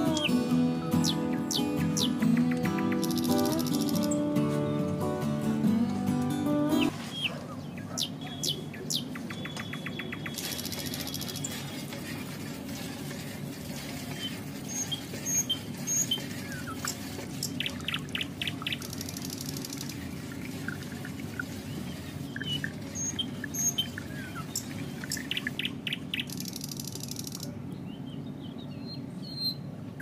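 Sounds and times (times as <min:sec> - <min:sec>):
birds chirping and trilling: 0:00.0 - 0:04.8, 0:06.5 - 0:12.4, 0:13.3 - 0:30.0
low background hum: 0:00.0 - 0:30.0.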